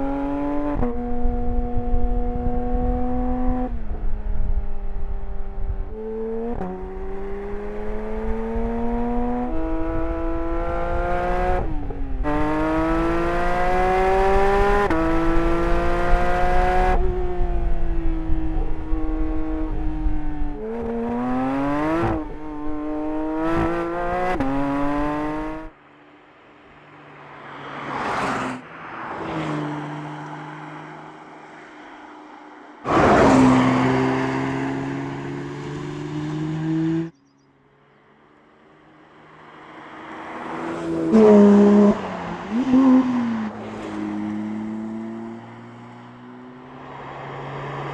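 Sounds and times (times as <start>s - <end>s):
sports car engine accelerating: 0.0s - 25.7s, 32.9s - 37.2s
car sweeping past: 27.1s - 37.1s, 39.2s - 47.9s.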